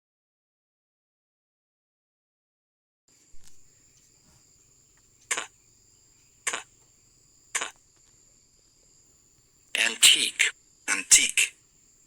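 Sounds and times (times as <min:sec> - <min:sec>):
cricket trill: 0:03.1 - 0:12.0
person saying k sounds: 0:09.8 - 0:11.6.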